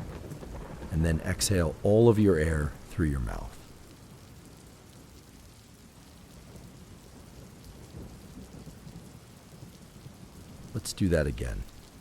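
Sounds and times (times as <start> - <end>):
thunder rumbling: 0.0 - 3.9
steady rain falling: 0.0 - 12.0.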